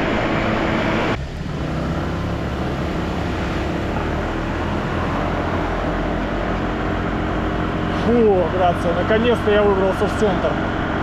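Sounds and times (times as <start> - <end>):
low scooter engine hum: 0.0 - 11.0
wind and road rush: 0.0 - 11.0.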